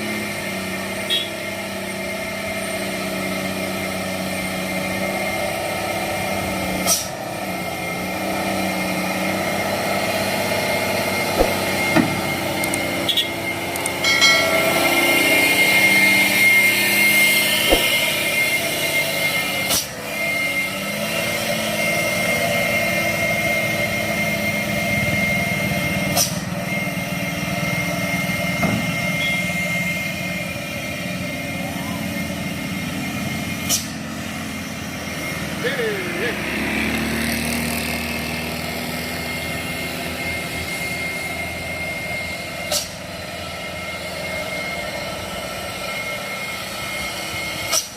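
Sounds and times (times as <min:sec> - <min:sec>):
truck diesel engine running: 0:00.0 - 0:47.9
sharp knocks: 0:17.7 - 0:18.2
people's voices: 0:35.6 - 0:36.5.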